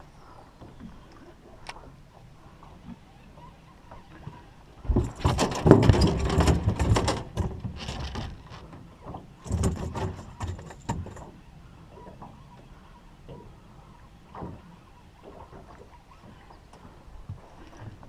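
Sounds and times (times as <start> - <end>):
handling noise knocking and rustling: 4.9 - 8.7, 9.4 - 11.3.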